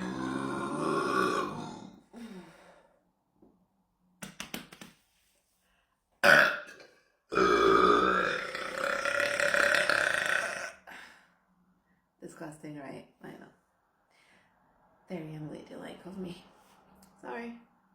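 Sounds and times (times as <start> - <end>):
woman burping: 0.0 - 1.9, 6.2 - 10.9.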